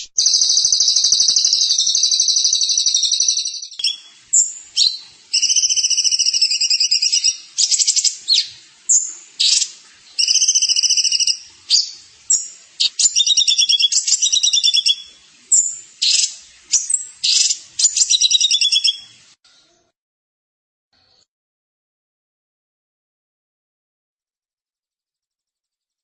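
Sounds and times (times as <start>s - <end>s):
songbird trilling: 0.0s - 19.1s.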